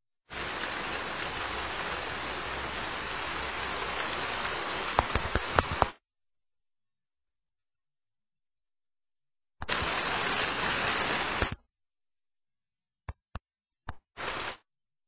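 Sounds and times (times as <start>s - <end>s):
rain hissing: 0.3s - 6.0s, 9.6s - 11.6s, 14.1s - 14.6s.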